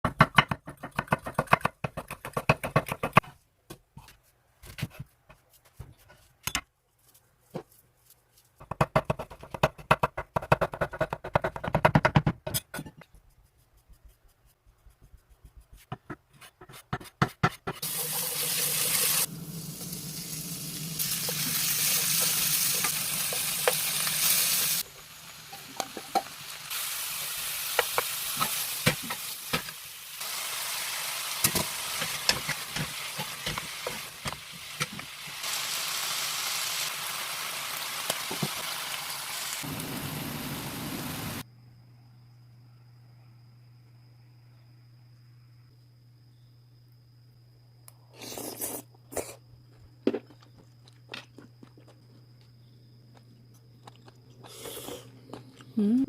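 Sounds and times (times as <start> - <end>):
food sizzling in hot pan: 17.8 - 41.4.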